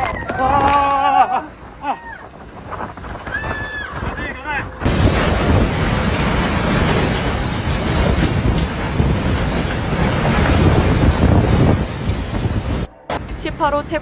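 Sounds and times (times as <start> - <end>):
loud wind buffeting microphone: 0.0 - 14.0
person crying out: 0.4 - 2.2.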